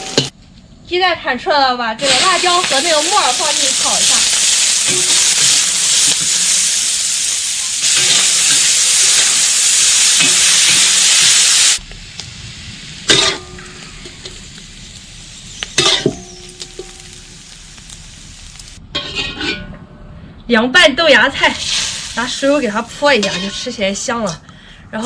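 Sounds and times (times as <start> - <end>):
vegetables sizzling in oiled pan: 0.0 - 0.3, 2.0 - 18.8, 21.4 - 23.8
metal cookware clanks: 13.1 - 14.4, 15.8 - 17.1, 18.9 - 19.8, 23.0 - 23.8.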